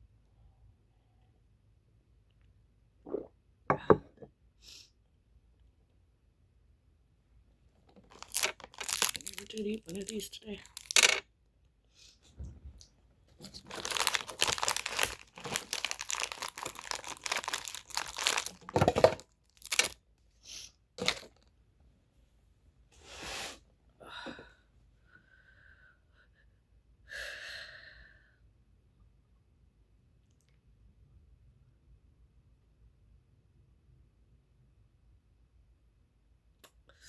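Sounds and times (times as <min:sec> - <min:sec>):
packaging crinkling and tearing: 0:08.0 - 0:11.1, 0:13.4 - 0:20.0, 0:21.0 - 0:21.4.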